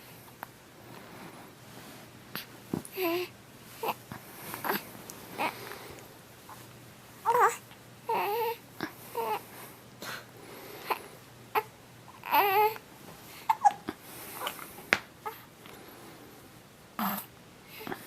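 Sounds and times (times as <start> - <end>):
baby whimpering cries: 7.2 - 8.6, 11.5 - 12.8
baby hiccups: 13.5 - 13.8.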